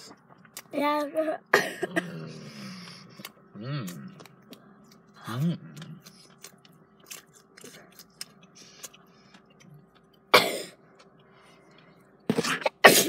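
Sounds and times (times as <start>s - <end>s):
baby sneezing: 12.4s - 13.0s.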